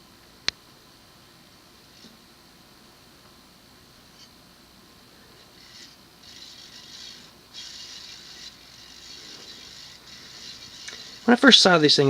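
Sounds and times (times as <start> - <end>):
ceiling fan running: 0.0 - 12.0
high-pitched bearing hiss: 5.2 - 12.0.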